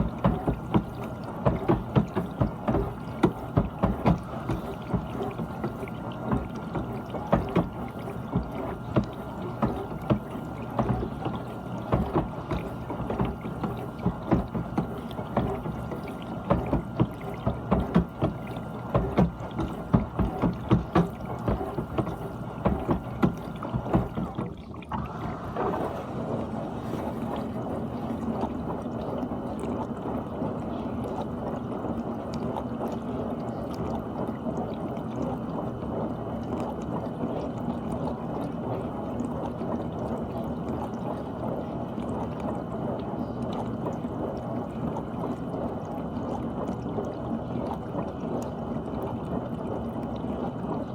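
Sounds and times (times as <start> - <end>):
spraying water rushing: 0.0 - 28.1
low pump hum: 0.0 - 50.9
water sloshing in dishwasher: 0.0 - 50.9.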